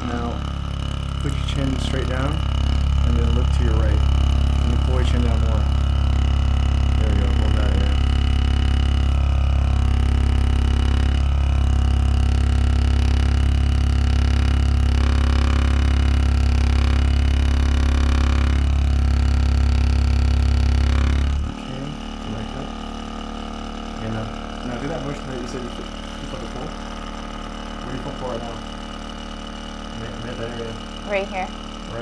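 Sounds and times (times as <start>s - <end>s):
electric motor humming: 0.0s - 32.0s.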